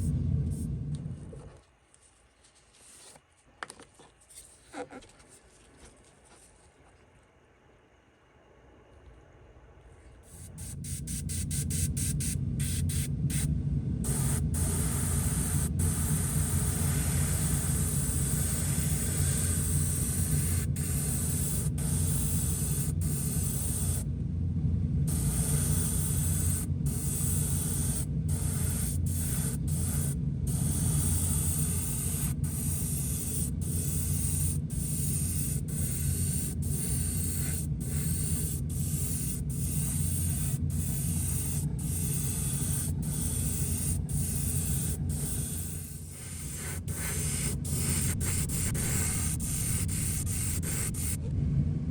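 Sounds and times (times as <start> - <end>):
steady low hum: 0.0 - 51.9
airbrush spraying hiss: 10.3 - 24.1, 25.1 - 51.2.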